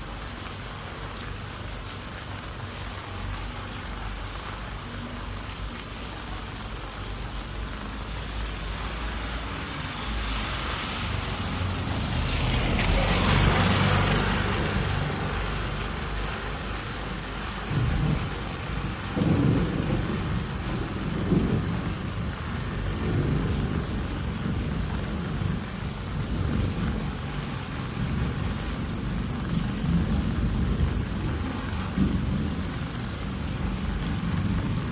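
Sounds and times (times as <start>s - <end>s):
rain hissing: 0.0s - 34.9s
rolling thunder: 17.2s - 34.9s.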